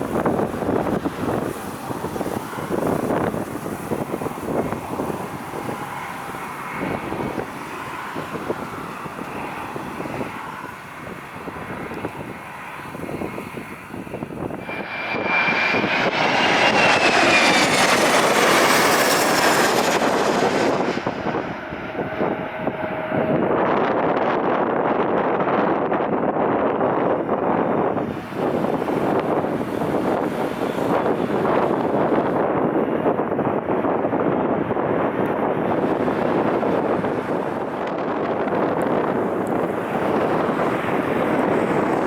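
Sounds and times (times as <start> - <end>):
jet airliner engines passing: 0.0 - 42.0
wind buffeting microphone: 0.0 - 42.0.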